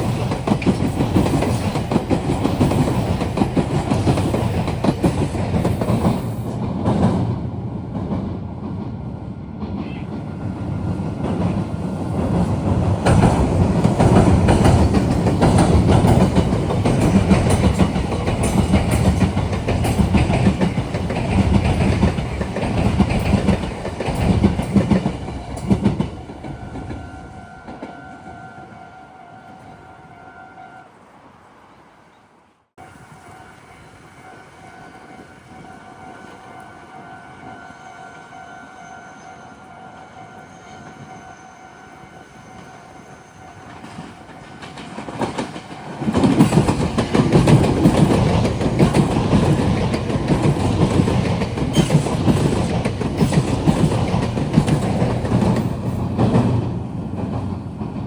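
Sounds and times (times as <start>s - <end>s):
train wheels clattering over rail joints: 0.0s - 7.3s, 11.1s - 27.2s, 43.7s - 58.0s.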